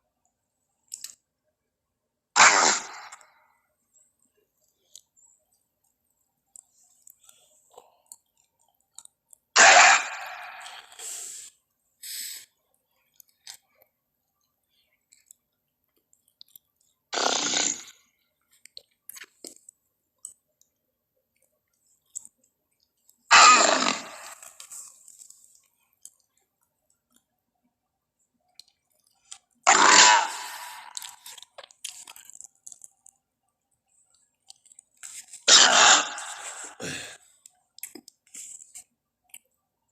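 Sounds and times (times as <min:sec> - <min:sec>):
creature snorts: 0:02.4 - 0:03.2, 0:09.6 - 0:11.4, 0:17.2 - 0:18.0, 0:23.3 - 0:24.5, 0:29.7 - 0:31.2, 0:35.5 - 0:37.2
creature throaty call: 0:02.4 - 0:03.2, 0:09.6 - 0:11.0, 0:23.3 - 0:24.5, 0:29.7 - 0:31.2, 0:35.5 - 0:37.1.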